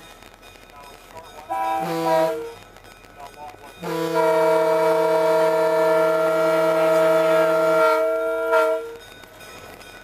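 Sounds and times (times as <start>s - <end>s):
locomotive air horn chord: 1.5s - 2.6s, 3.8s - 9.0s.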